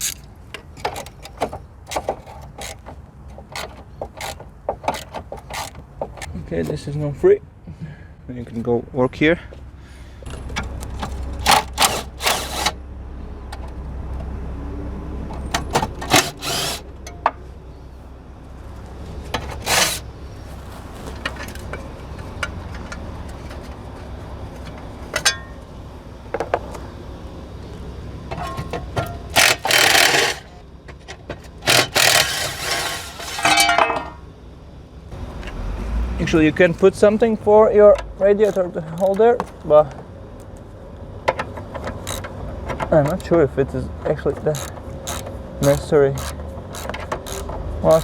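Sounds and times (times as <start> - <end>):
tool scraping: 0.0 - 0.2, 11.0 - 12.8, 16.0 - 16.9, 19.3 - 21.7, 28.4 - 30.6, 31.6 - 34.2.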